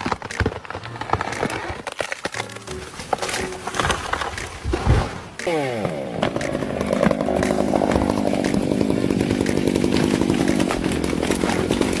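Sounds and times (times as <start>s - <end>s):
chainsaw engine running: 5.4s - 12.0s.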